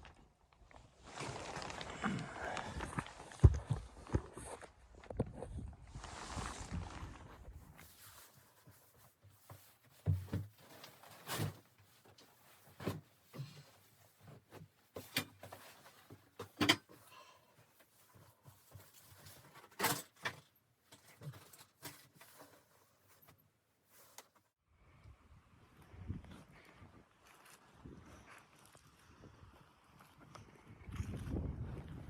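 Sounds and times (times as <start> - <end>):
objects knocking and clunking: 9.3 - 22.6.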